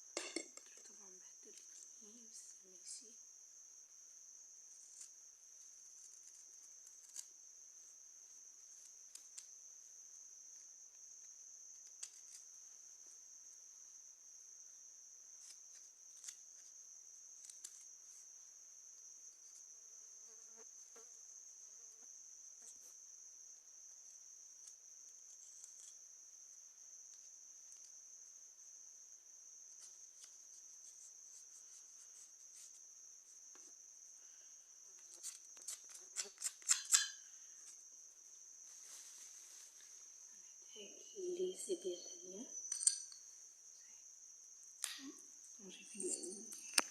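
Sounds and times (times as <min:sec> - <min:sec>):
faint clicks and scratches: 0:00.2 - 0:02.5, 0:04.7 - 0:07.4, 0:11.2 - 0:12.5, 0:15.4 - 0:16.8, 0:17.4 - 0:18.3, 0:24.6 - 0:26.0, 0:34.9 - 0:37.8.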